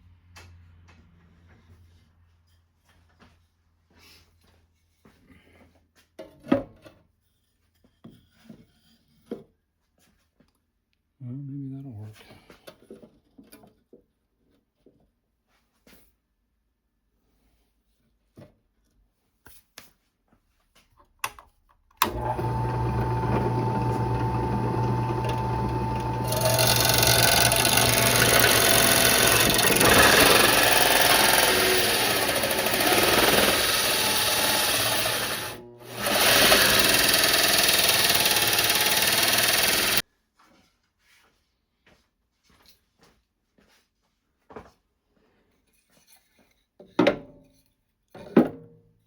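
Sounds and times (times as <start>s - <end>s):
electric drill into sheet metal: 22.0s - 40.0s.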